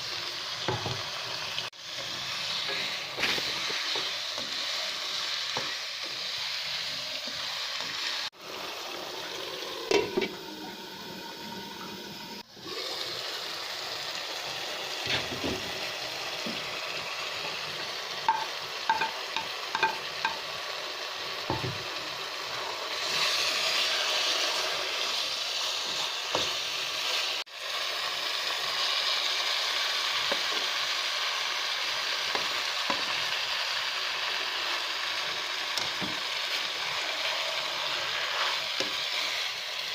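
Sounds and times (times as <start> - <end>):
food sizzling in a pan: 0.0 - 39.9
spoon clinking against pan: 18.3 - 20.4.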